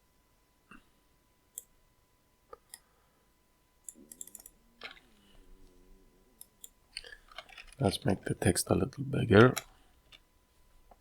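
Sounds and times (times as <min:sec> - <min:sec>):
computer mouse clicks: 0:03.8 - 0:05.3.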